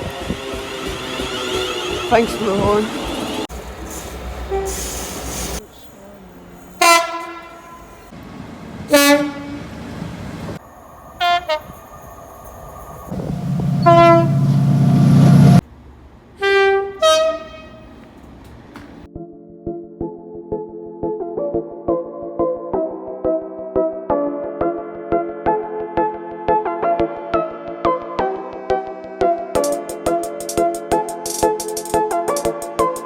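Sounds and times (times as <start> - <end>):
train horn blasts: 4.4 - 5.6, 6.8 - 8.1, 8.9 - 9.8, 11.2 - 12.0, 13.1 - 15.6, 16.4 - 18.0
loud low rumble: 10.6 - 15.6.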